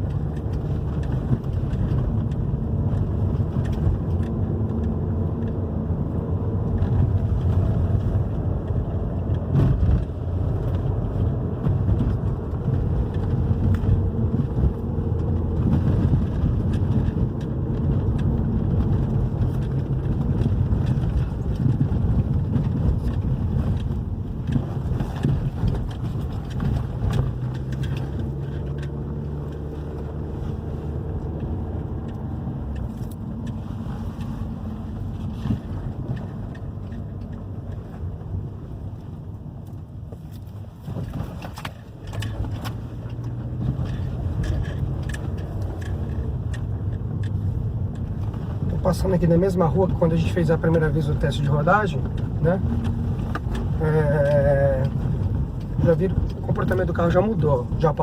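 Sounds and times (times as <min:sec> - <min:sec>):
engine and tyre rumble: 0:00.0 - 0:58.0
suspension knocks over road: 0:06.7 - 0:33.5.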